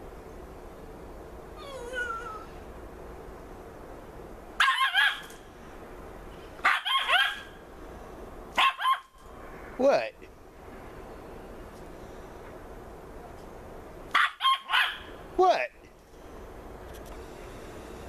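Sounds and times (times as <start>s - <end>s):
small dog whining: 1.6s - 2.6s
small dog yapping: 4.6s - 5.4s, 6.6s - 7.6s, 8.6s - 9.2s, 14.1s - 15.1s.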